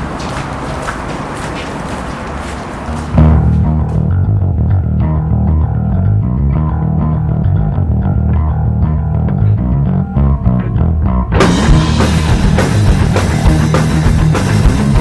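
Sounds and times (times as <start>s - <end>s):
rock band with drums: 2.9s - 4.2s, 10.6s - 15.0s
bass and guitar riff: 3.1s - 15.0s.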